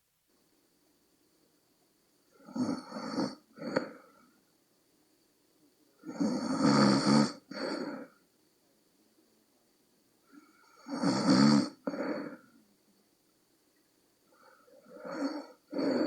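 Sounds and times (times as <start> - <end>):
person snoring: 2.4 - 4.1, 6.0 - 8.1, 10.4 - 12.4, 14.6 - 16.0.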